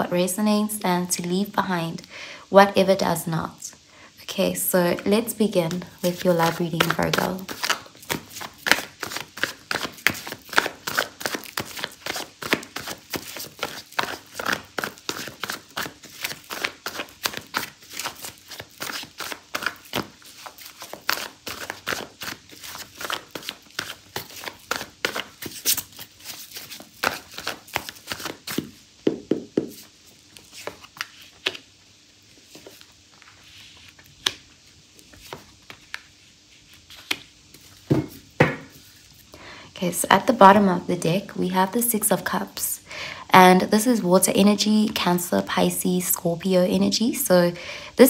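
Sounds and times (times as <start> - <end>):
cards being shuffled: 5.0 - 31.7, 32.3 - 39.2.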